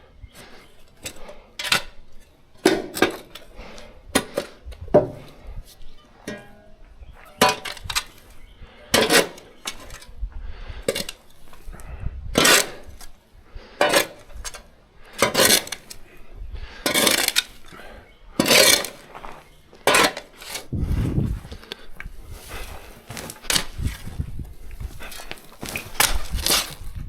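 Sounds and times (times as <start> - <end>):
metal hand tool striking and scraping: 6.2 - 8.3, 8.9 - 10.1, 12.4 - 13.1, 13.8 - 14.6, 15.2 - 16.0, 16.8 - 17.7, 18.4 - 20.8.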